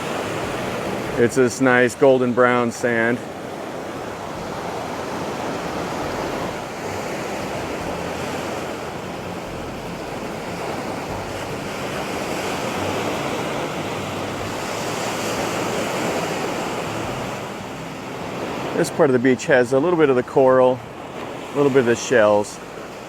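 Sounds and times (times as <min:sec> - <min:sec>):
surf washing onto beach: 0:00.0 - 0:23.0.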